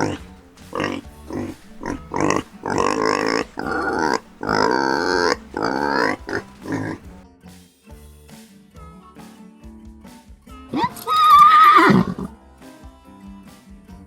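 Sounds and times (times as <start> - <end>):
pigs grunting: 0.0 - 7.2, 10.8 - 12.3.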